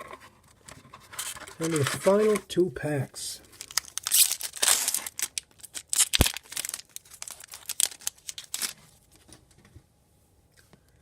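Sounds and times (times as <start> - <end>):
wrapper crinkling and tearing: 1.2 - 2.4, 3.4 - 9.1.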